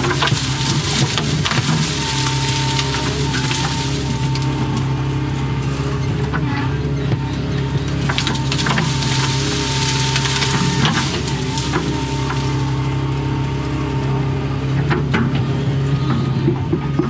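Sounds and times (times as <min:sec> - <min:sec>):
wood cracking and snapping: 0:00.0 - 0:06.5, 0:07.4 - 0:14.2
excavator diesel engine: 0:00.0 - 0:17.0.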